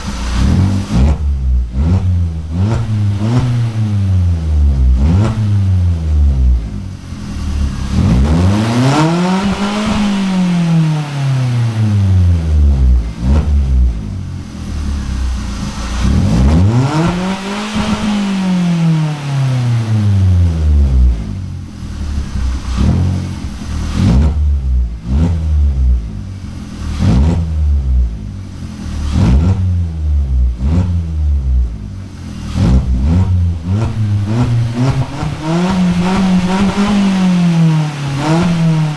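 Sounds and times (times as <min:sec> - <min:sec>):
car engine revving: 0:00.0 - 0:38.9.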